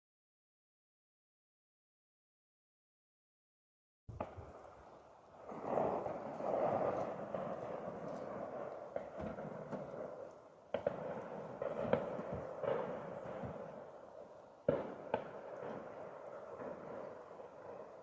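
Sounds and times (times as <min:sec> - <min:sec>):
distant shotgun shots: 0:10.7 - 0:14.0, 0:14.6 - 0:17.9.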